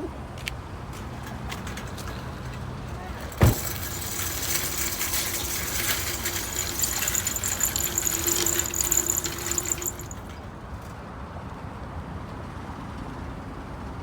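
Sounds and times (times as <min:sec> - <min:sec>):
rapid clicking and rattling: 0:01.0 - 0:10.6.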